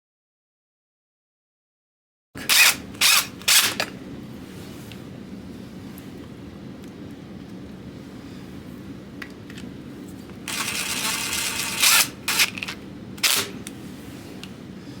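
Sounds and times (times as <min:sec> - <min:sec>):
power driver running screws: 0:02.4 - 0:03.8, 0:10.5 - 0:13.5
steady low hum: 0:02.4 - 0:15.0.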